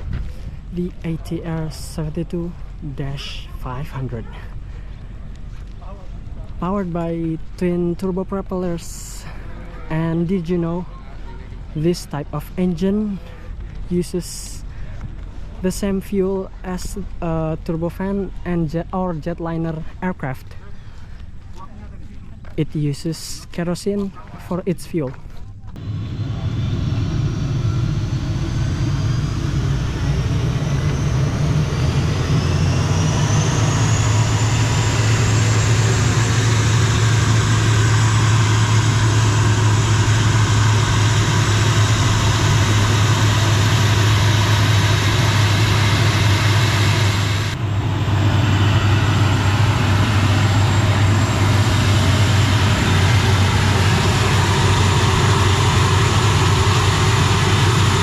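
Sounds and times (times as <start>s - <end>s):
loud low engine drone: 0.0s - 13.8s, 25.8s - 58.0s
turbine whine: 0.0s - 13.9s, 25.8s - 58.0s.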